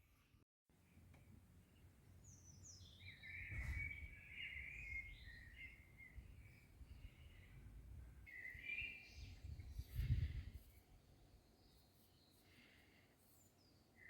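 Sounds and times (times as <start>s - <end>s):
faint low outdoor rumble: 0.1s - 13.3s.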